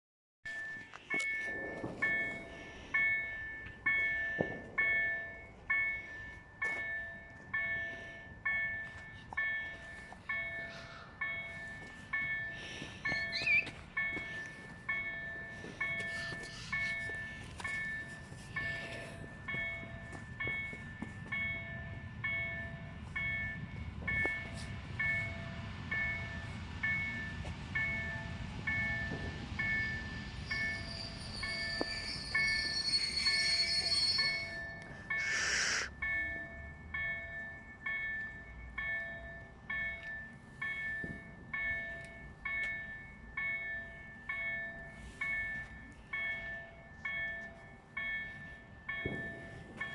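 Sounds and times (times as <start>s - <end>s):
level-crossing warning bell: 0.4s - 49.9s
train rumbling past: 0.5s - 49.9s
wheel or brake squeal: 13.0s - 13.8s, 30.4s - 36.0s
short hiss: 35.2s - 35.9s.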